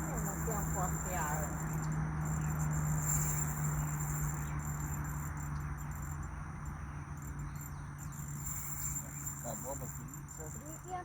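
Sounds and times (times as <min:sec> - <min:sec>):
insect chirring: 0:00.0 - 0:11.0.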